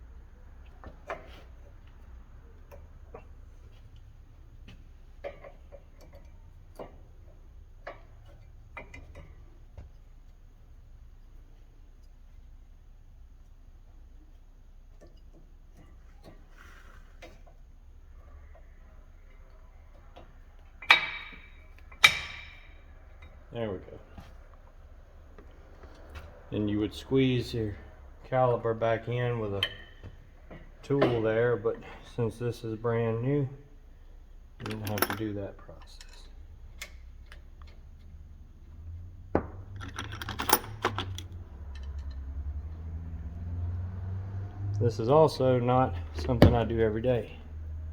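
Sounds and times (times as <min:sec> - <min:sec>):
metal parts and tools handled: 0:20.2 - 0:23.4, 0:34.6 - 0:37.4, 0:39.7 - 0:42.2.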